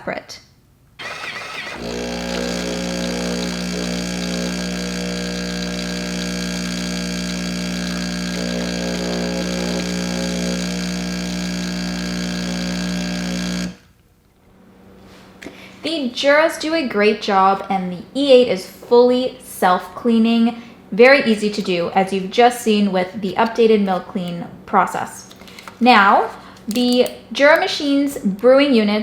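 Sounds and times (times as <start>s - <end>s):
espresso machine hum: 1.0s - 13.8s.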